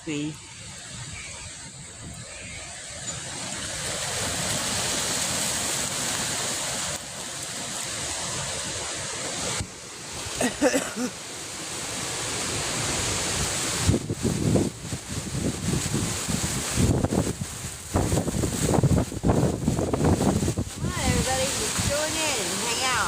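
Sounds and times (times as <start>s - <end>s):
wind gusts thumping microphone: 0.1s - 10.6s, 11.7s - 23.0s
strong wind rushing: 11.8s - 23.0s.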